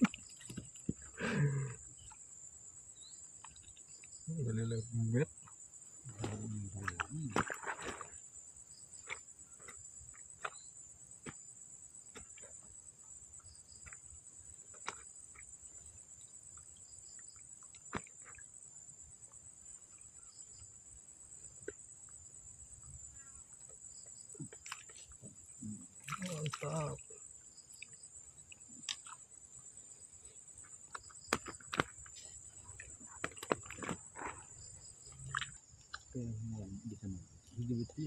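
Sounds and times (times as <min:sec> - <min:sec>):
crickets chirping: 0:00.0 - 0:38.0.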